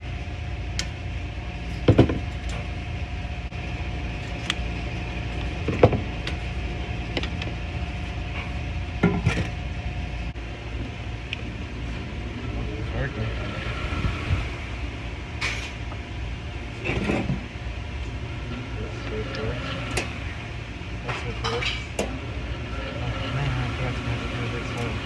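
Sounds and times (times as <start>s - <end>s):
steady low hum: 0.0s - 25.0s
sharp knocks and clatters: 1.7s - 2.7s.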